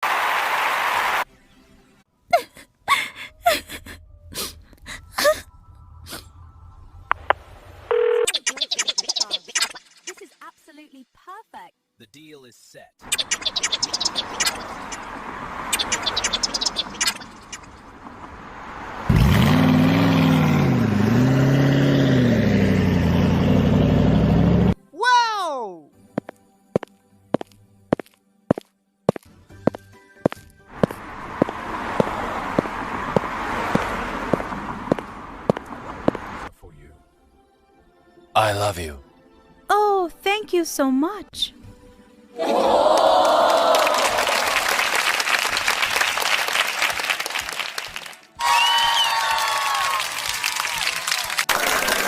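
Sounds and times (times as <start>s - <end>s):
gasping whimpering vocal sounds: 2.4s - 5.5s
engine-like running sound: 17.7s - 24.8s.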